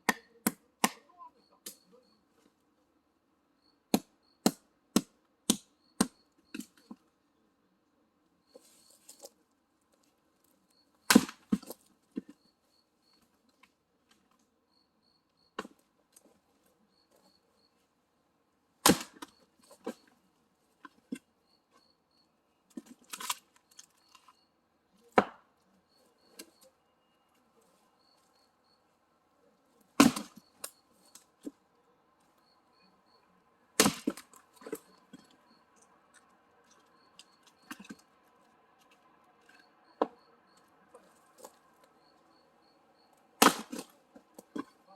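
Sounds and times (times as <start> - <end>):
axe chopping firewood: 0.0 - 1.8, 3.9 - 6.8, 11.1 - 11.8, 18.8 - 20.0, 25.1 - 25.5, 30.0 - 30.7, 33.8 - 35.3, 43.4 - 44.8.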